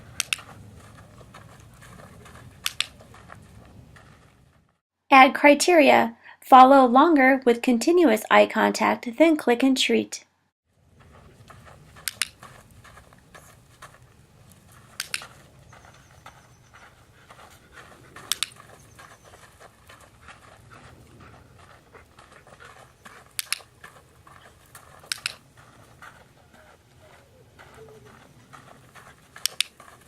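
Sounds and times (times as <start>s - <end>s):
training clicker double clicks: 0.2s - 0.5s, 2.6s - 2.9s, 12.0s - 12.4s, 15.0s - 15.3s, 18.3s - 18.6s, 23.4s - 23.6s, 25.1s - 25.4s, 29.4s - 29.7s
dog panting: 14.7s - 30.0s.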